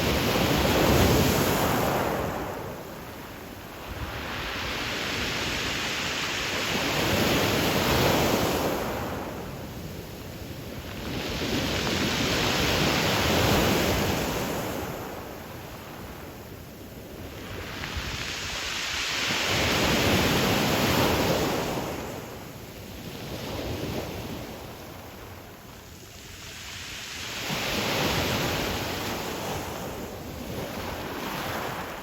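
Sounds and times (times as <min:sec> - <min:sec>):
waves breaking on pebble shore: 0:17.2 - 0:22.2.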